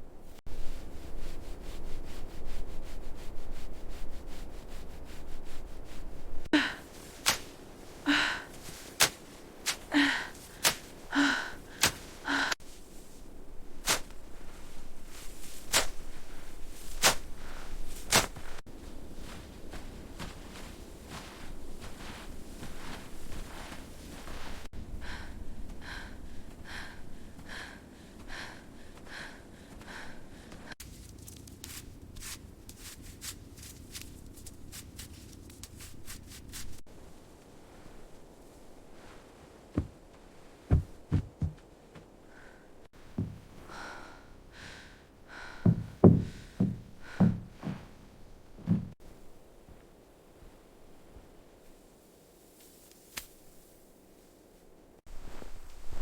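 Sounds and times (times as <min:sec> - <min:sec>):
footsteps crunching in snow: 0:06.8 - 0:24.7, 0:30.7 - 0:42.2
dull knocks: 0:40.7 - 0:41.6, 0:45.7 - 0:47.8.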